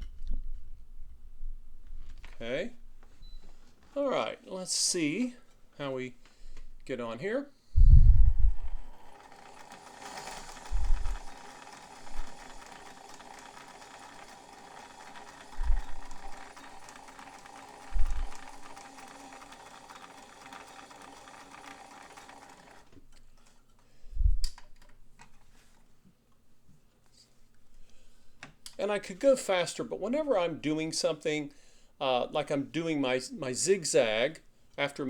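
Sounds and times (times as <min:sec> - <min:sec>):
low thumps: 0:07.8 - 0:08.7
sewing machine stitching: 0:08.4 - 0:23.6.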